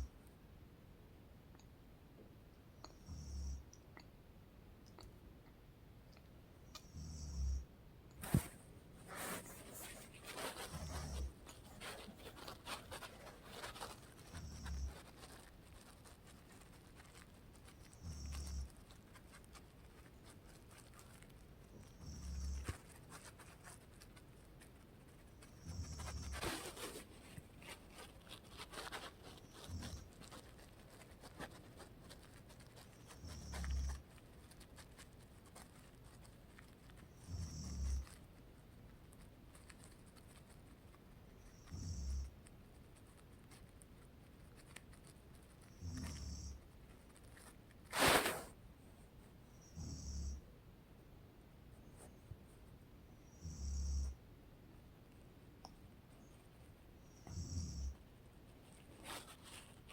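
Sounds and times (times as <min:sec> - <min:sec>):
rustling: 0:08.2 - 0:49.4, 0:56.1 - 0:59.9.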